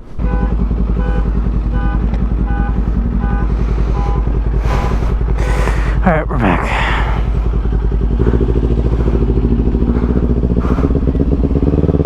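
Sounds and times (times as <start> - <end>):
motorcycle engine idling: 0.0 - 12.0
wind rush: 3.6 - 6.0.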